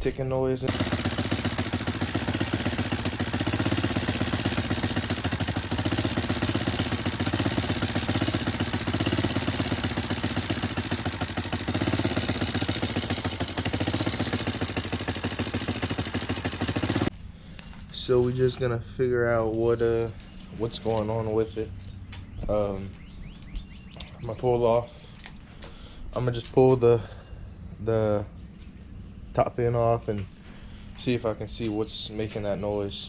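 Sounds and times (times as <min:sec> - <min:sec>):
engine idling with ticking: 0:00.7 - 0:17.2.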